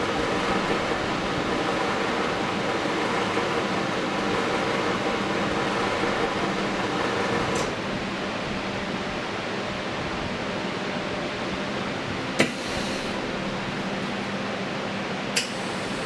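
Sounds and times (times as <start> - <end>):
machine motor humming: 0.0 - 7.8.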